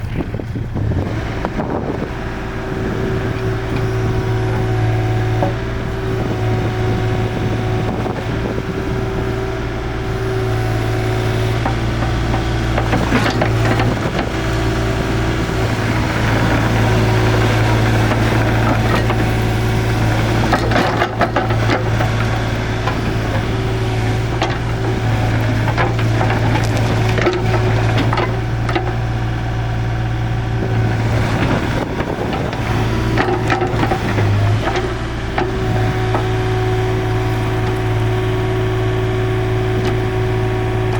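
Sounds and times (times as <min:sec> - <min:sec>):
excavator diesel engine running: 0:00.0 - 0:40.9
knocks and scraping of machine: 0:11.0 - 0:29.2, 0:30.6 - 0:38.0.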